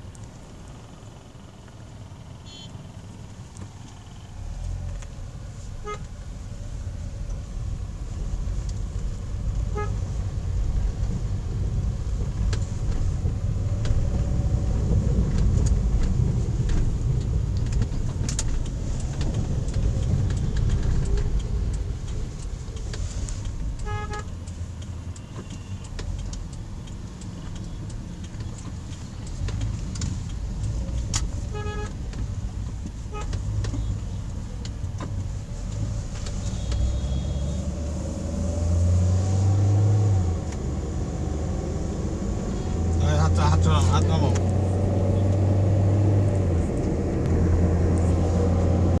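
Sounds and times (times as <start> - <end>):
vehicle horn toots: 2.4 - 2.8, 5.8 - 6.1, 9.7 - 10.0, 23.8 - 24.3, 31.5 - 32.0, 36.4 - 37.8.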